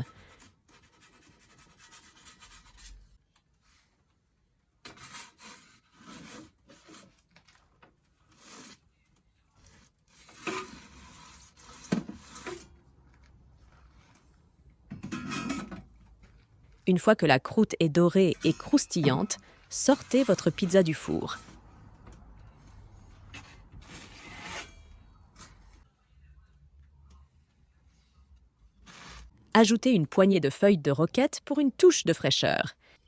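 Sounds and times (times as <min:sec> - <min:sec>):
pizza peel scraping oven floor: 0:23.3 - 0:25.7.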